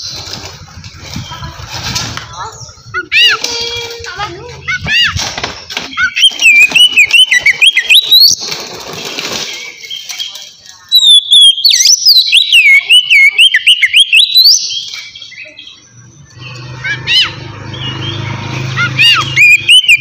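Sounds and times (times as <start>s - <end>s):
magpie-robin singing whistled phrases: 5.9s - 8.4s, 9.8s - 20.0s.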